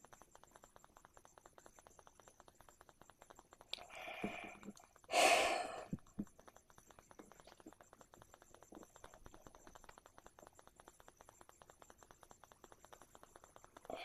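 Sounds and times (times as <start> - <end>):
person sighing: 3.9 - 6.0.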